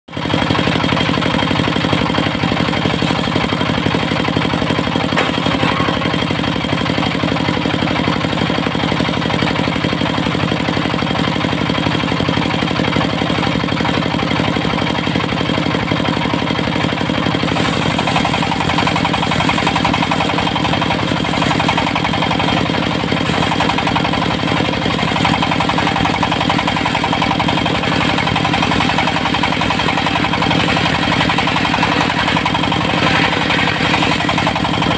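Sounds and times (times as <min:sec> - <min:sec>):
sawmill diesel engine running: 0:00.1 - 0:34.9.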